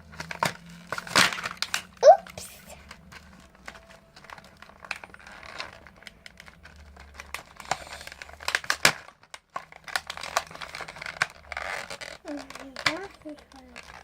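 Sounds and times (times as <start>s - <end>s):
packaging crinkling and crackling: 0.0s - 14.0s
packaging tearing: 4.5s - 14.0s.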